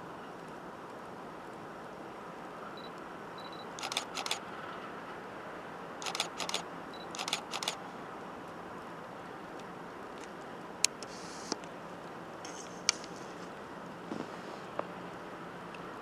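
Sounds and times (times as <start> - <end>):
camera autofocus beeps: 2.8 - 4.4, 6.0 - 7.8
camera shutter clicks: 3.6 - 4.4, 6.0 - 7.8.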